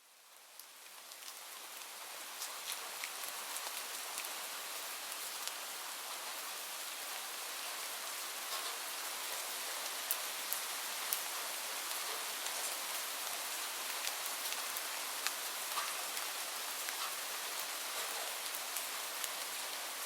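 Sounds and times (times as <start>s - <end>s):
light rain falling: 0.0s - 20.0s.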